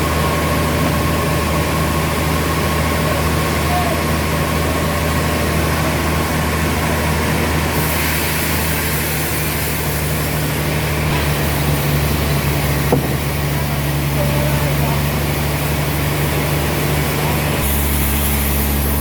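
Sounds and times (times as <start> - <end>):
sawmill machinery humming: 0.0 - 19.0
high hiss: 7.6 - 19.0.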